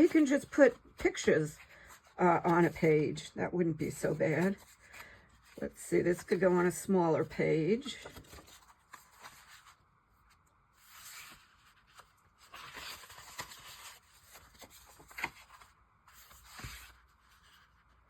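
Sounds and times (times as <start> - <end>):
paper rustling and sliding: 7.9 - 18.0.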